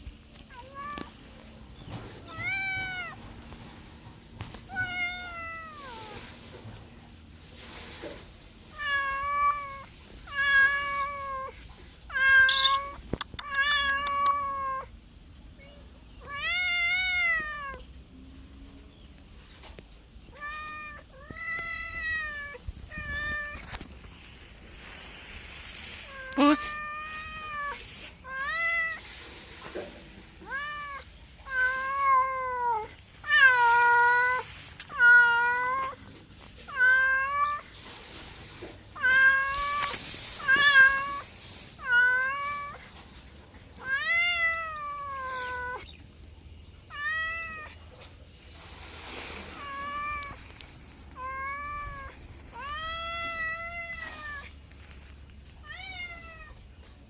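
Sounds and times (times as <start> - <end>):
cat meowing: 12.1 - 14.9, 41.8 - 42.9, 43.8 - 45.9, 46.9 - 47.8, 51.1 - 54.6, 55.6 - 56.7.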